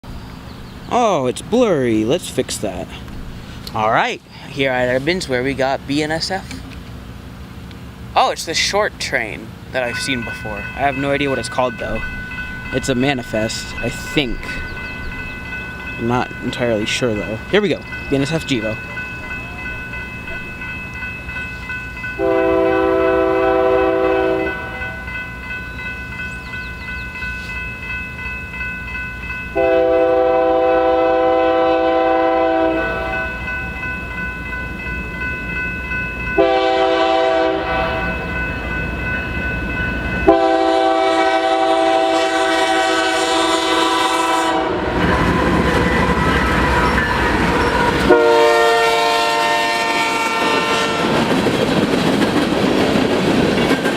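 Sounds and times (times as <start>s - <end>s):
locomotive diesel rumble: 0.0s - 28.5s
locomotive air horn: 22.2s - 25.0s, 29.6s - 33.3s, 36.4s - 38.2s, 40.3s - 45.0s, 48.1s - 51.3s
train wheels clattering over rails: 50.0s - 53.9s.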